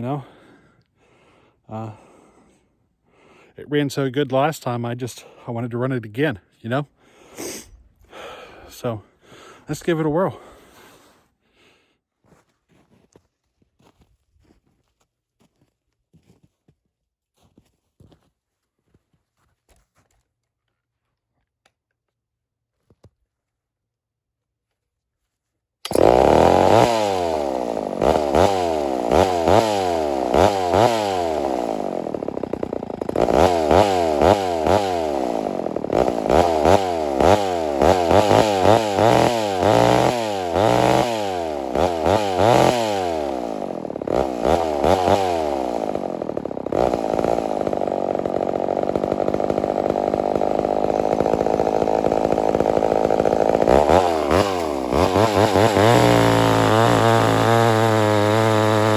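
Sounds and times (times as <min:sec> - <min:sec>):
chainsaw revving: 0:25.8 - 0:58.9.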